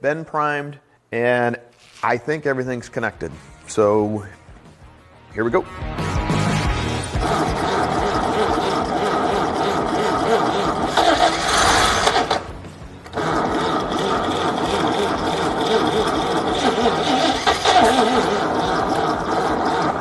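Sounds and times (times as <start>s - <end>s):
engine mechanical clatter: 7.2s - 12.5s, 13.1s - 20.0s.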